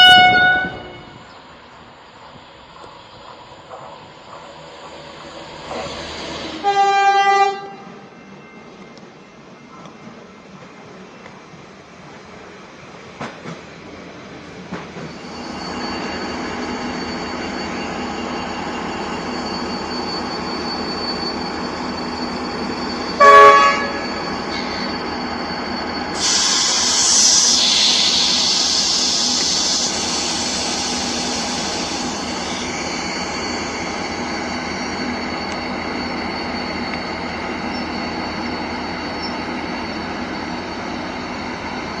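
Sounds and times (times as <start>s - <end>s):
train horn blast: 0.0s - 1.2s, 6.6s - 7.9s, 23.2s - 24.1s
train rumbling past: 0.0s - 42.0s
high hissing squeal: 0.7s - 6.7s, 14.4s - 42.0s.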